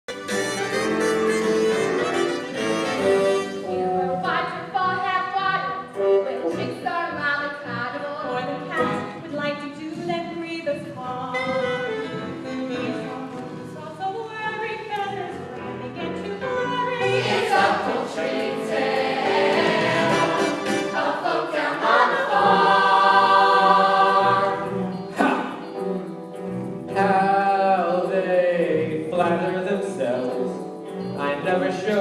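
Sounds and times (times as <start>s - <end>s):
instrumental accompaniment: 0.1s - 32.0s
chorus singing: 16.4s - 25.7s.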